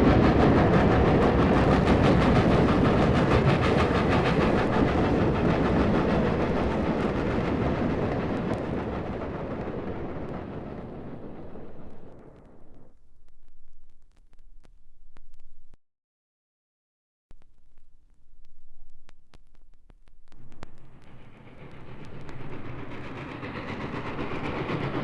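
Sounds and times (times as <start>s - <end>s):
loud rumbling with rapid clatter: 0.0s - 13.0s, 19.9s - 25.0s.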